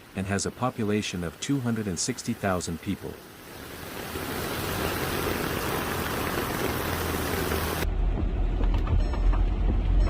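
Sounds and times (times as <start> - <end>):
rushing water: 0.0 - 7.8.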